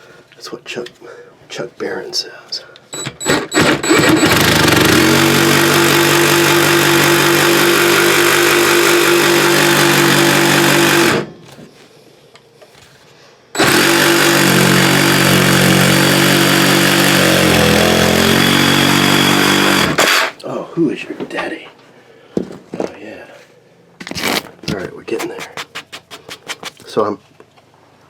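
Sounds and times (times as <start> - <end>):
power saw cutting wood: 3.2 - 11.3, 13.6 - 20.4.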